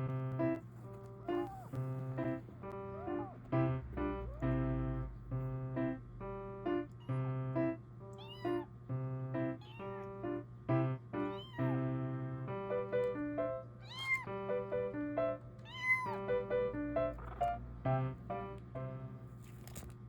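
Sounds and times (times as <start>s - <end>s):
background keyboard music: 0.0s - 19.3s
kitten mewing: 1.2s - 5.1s, 8.2s - 8.7s, 9.5s - 10.2s, 11.2s - 11.8s, 13.8s - 14.4s, 15.7s - 16.4s, 17.0s - 17.6s.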